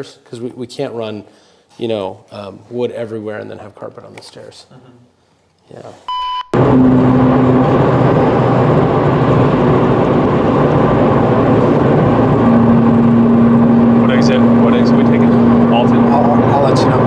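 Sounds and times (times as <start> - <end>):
car engine drone: 6.6 - 17.0
low hum: 6.6 - 17.0
road and wind noise: 6.6 - 17.0.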